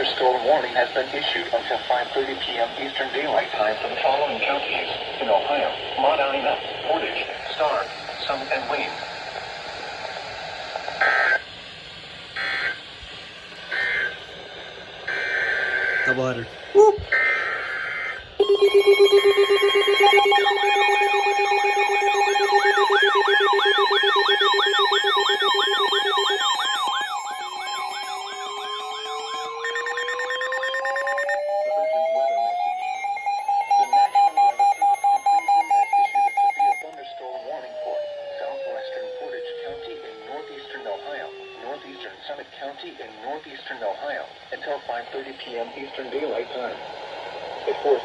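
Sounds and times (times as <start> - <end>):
faint radio hiss: 0.0 - 14.5, 38.4 - 47.0
fast wailing alarm tones: 15.0 - 42.2
loud pulsed beeps: 15.1 - 36.9
harsh digital screeches: 17.1 - 36.8
tone rising in pitch: 18.4 - 36.9.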